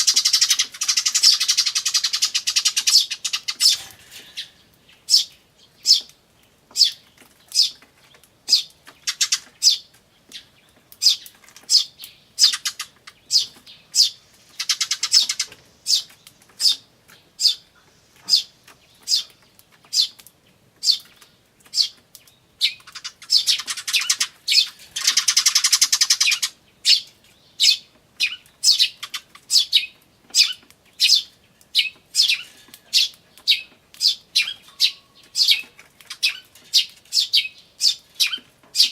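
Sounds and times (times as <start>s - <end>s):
sparrows chirping: 0.0s - 38.9s
fast buzzing bird chatter: 22.8s - 26.5s.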